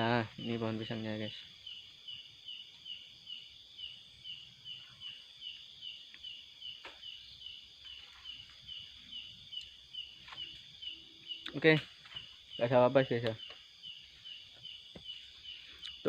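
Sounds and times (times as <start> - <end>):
insect chirping: 0.0 - 16.0.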